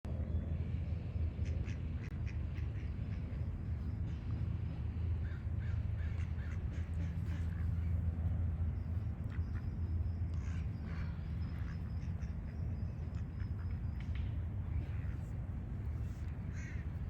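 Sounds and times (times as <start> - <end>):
low steady rumble: 0.0 - 17.0
duck quacking: 1.4 - 3.4, 10.3 - 13.9, 16.4 - 17.0
birds calling: 1.4 - 17.0.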